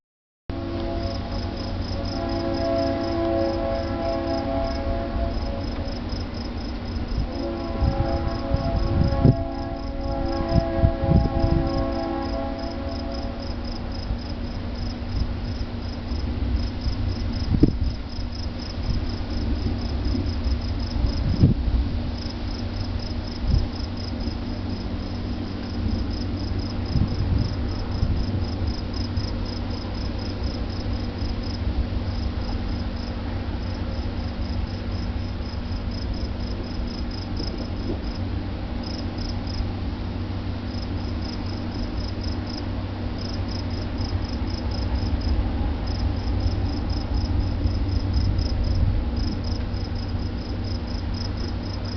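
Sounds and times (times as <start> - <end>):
horn-like tone: 0.5 - 6.1, 7.2 - 13.8
continuous low rumble: 0.5 - 51.9
crickets chirping: 0.6 - 51.9.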